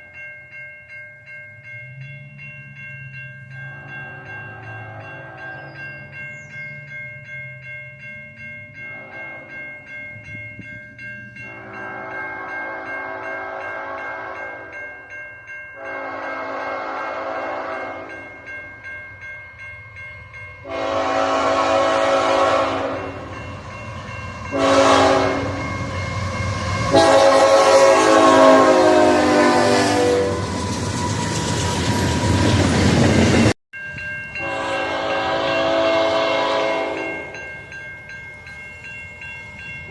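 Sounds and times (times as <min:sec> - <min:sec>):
rapid bell ringing: 0:00.0 - 0:16.0, 0:17.7 - 0:20.7, 0:23.0 - 0:26.8, 0:32.9 - 0:35.6, 0:37.0 - 0:39.9
train horn blasts: 0:03.7 - 0:05.8, 0:08.8 - 0:09.6, 0:11.4 - 0:14.8, 0:15.8 - 0:18.2, 0:20.6 - 0:23.3, 0:24.5 - 0:25.9, 0:26.7 - 0:30.6, 0:34.4 - 0:37.2.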